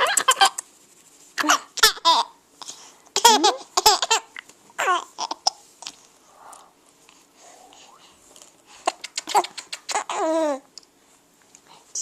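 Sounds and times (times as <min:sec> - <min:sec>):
baby giggling: 0:00.0 - 0:00.6, 0:01.4 - 0:02.4, 0:03.2 - 0:05.6, 0:08.8 - 0:10.6.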